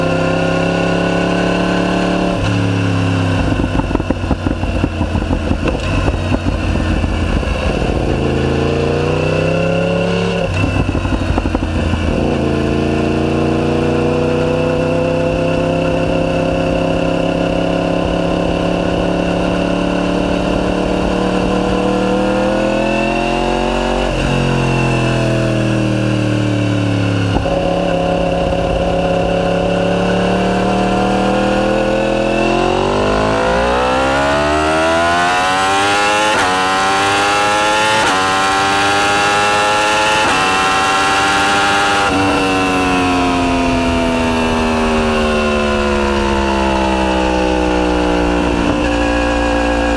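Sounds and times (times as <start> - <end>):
motorcycle engine accelerating hard: 0.0 - 49.9.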